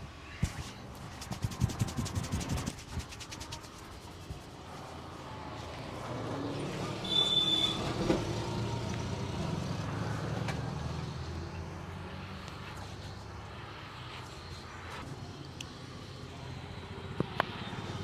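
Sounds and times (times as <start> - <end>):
vehicle engine passing by: 7.7 - 13.5.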